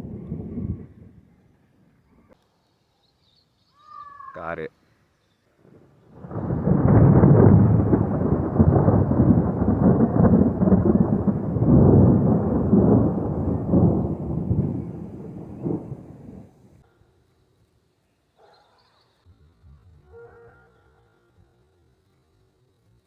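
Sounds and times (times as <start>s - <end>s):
rolling thunder rumble: 0.0s - 1.6s, 5.6s - 16.8s.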